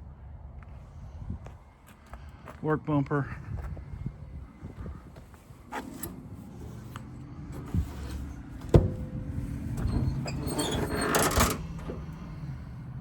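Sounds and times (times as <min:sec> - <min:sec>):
rattling clatter: 0:07.6 - 0:12.9.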